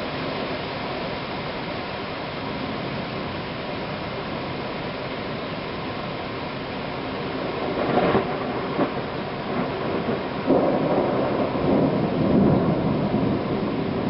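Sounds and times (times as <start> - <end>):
rain rushing: 0.0 - 14.0
thunder rumbling: 7.3 - 14.0.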